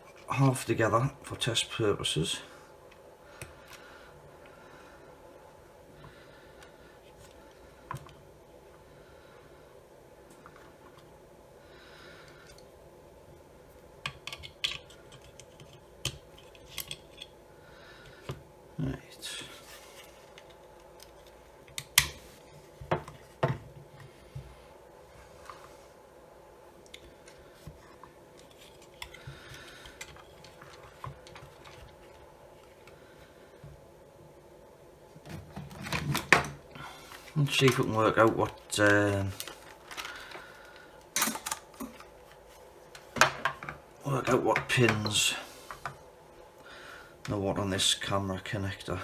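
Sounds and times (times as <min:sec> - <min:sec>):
faint hum: 0:00.0 - 0:49.0
small parts and tools clicking: 0:14.0 - 0:17.3.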